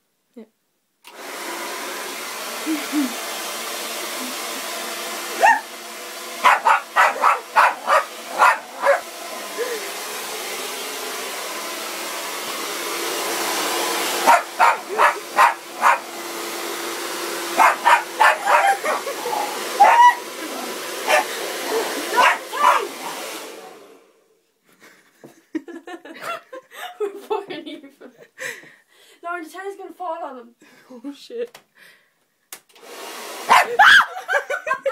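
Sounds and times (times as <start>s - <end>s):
hair dryer running: 1.0s - 24.3s, 32.7s - 34.9s
dog barking: 5.4s - 5.6s, 6.4s - 9.1s, 14.2s - 16.0s, 17.6s - 20.2s, 21.1s - 21.3s, 22.1s - 23.2s, 33.5s - 34.0s.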